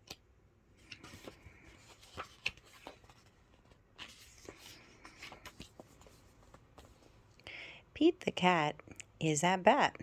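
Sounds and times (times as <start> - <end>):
book pages rustling: 0.0 - 7.4.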